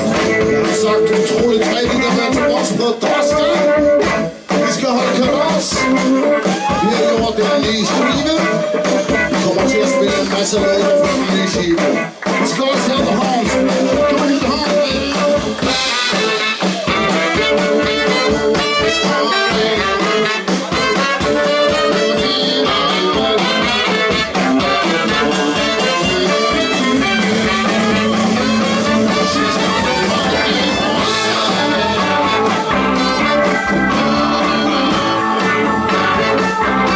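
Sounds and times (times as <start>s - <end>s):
live blues band playing: 0.0s - 36.9s.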